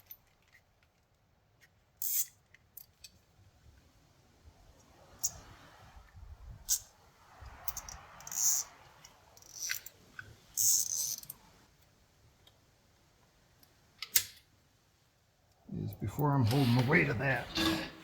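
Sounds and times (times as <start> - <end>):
scraping rustles of wire: 16.0 - 18.0.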